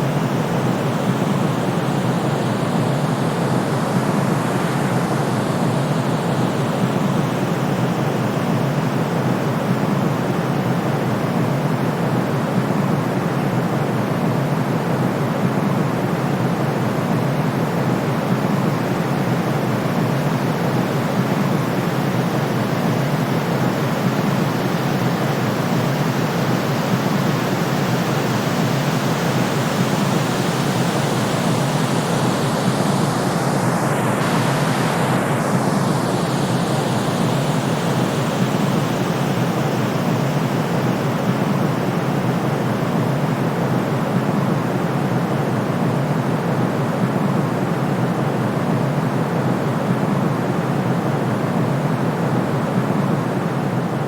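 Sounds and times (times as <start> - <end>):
pink noise rush: 27.3 - 43.5.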